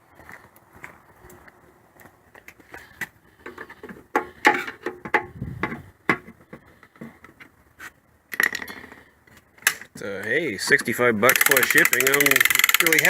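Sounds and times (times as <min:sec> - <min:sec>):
hands clicking and knocking on engine: 0:03.0 - 0:07.5, 0:10.7 - 0:13.0.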